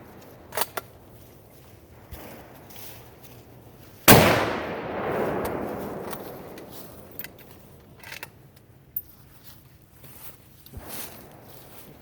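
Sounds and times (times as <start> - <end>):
rifle shot echoing: 4.1 - 7.4.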